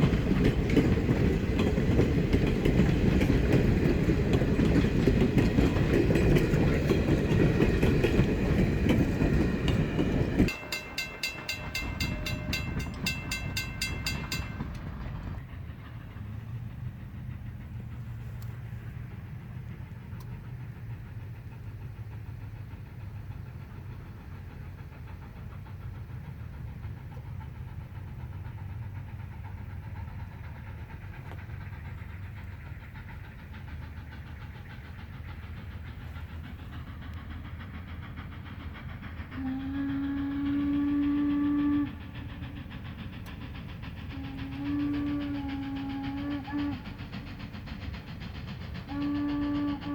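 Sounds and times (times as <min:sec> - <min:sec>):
steam locomotive whistle: 0:39.3 - 0:42.4, 0:44.0 - 0:47.2, 0:48.8 - 0:49.9.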